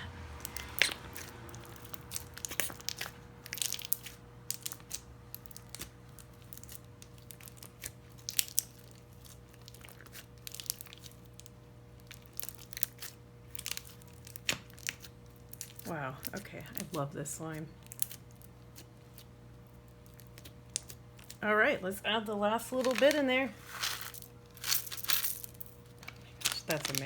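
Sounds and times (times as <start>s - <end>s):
slime squishing with crackling pops: 0.4s - 21.4s.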